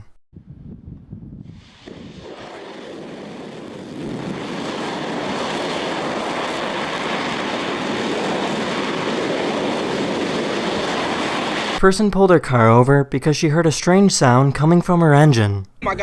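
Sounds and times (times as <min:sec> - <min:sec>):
rocket engine roaring: 0:00.4 - 0:11.8.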